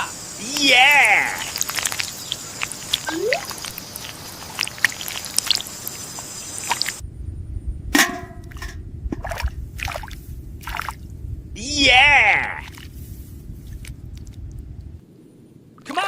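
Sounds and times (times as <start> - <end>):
hiss: 0.0 - 7.0
drip-like clicks: 0.5 - 7.0, 13.7 - 14.6
low rumble: 7.0 - 15.0.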